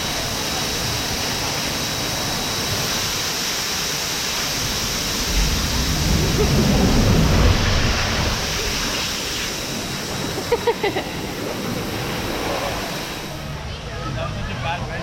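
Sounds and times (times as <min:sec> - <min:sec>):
water rushing: 0:00.0 - 0:15.0
low rumble: 0:04.6 - 0:13.9.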